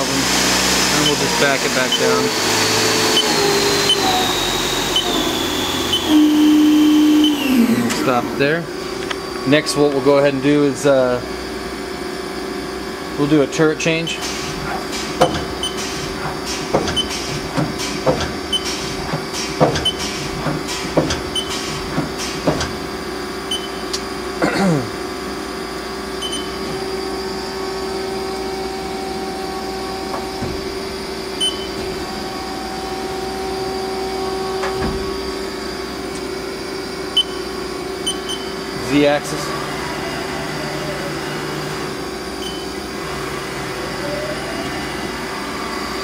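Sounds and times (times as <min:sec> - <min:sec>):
machine steady hum: 0:00.0 - 0:46.0
machine whine: 0:00.0 - 0:46.0
lathe turret clunks: 0:00.2 - 0:10.3, 0:13.9 - 0:24.1, 0:30.0 - 0:32.8, 0:34.3 - 0:36.3.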